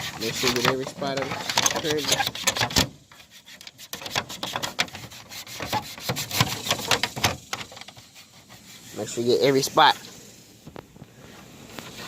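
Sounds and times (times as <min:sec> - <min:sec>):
toothbrush scrubbing: 0:03.2 - 0:07.1.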